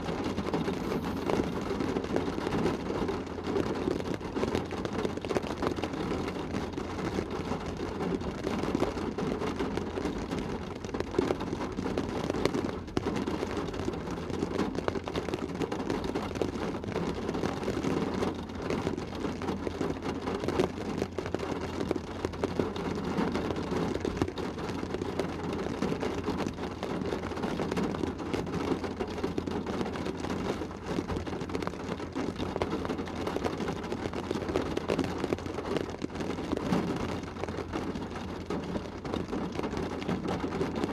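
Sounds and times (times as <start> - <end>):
low steady hum: 0.0 - 31.8
rain pattering on car roof: 0.0 - 40.9.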